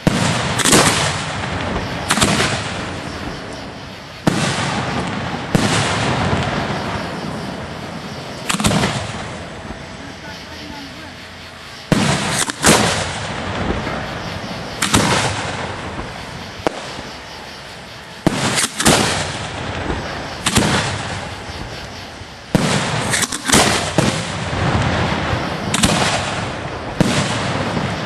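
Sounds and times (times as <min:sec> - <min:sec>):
firework shells booming: 0:00.0 - 0:11.1, 0:11.8 - 0:28.0
continuous rumble: 0:00.0 - 0:28.0.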